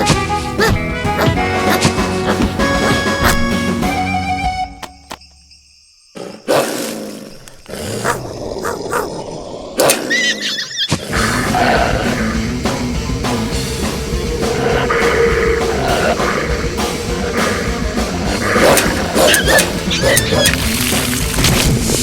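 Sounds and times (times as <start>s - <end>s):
animal roaring and growling: 6.2s - 21.6s.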